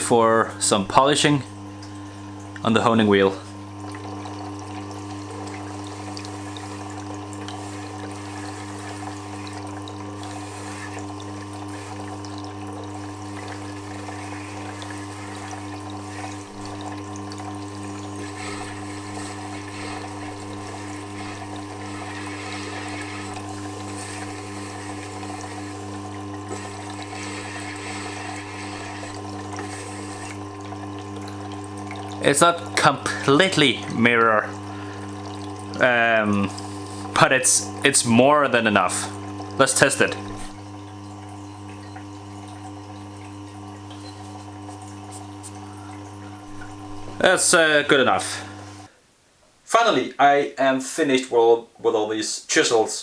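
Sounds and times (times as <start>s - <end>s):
sharpening machine motor hum: 0.0s - 48.9s
chisel hissing on honing wheel: 5.2s - 35.2s, 35.8s - 42.0s, 44.0s - 48.9s.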